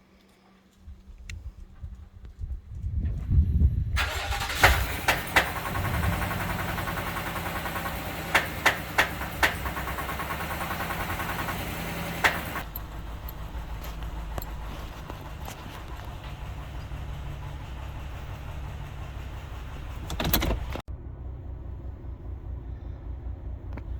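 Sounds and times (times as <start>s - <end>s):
engine popping: 4.0s - 20.9s
engine idling: 4.0s - 23.9s.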